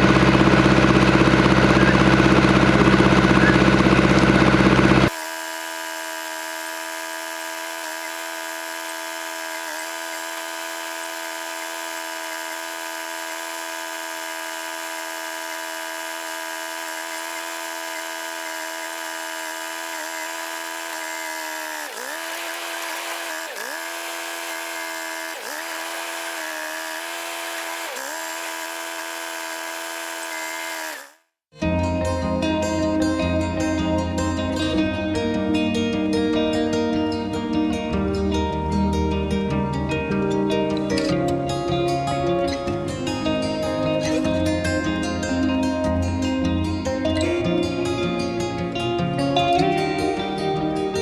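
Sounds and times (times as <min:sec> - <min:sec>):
tractor engine running at high revs: 0:00.0 - 0:31.2.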